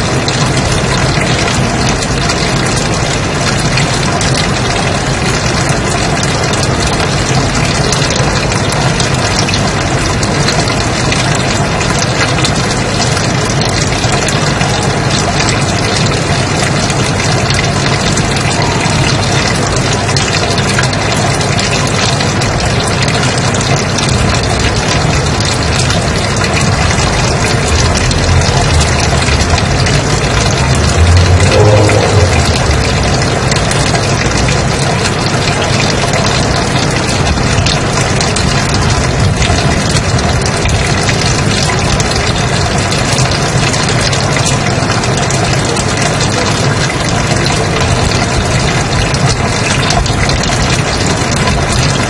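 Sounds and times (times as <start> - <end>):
low rumble: 26.8 - 34.5.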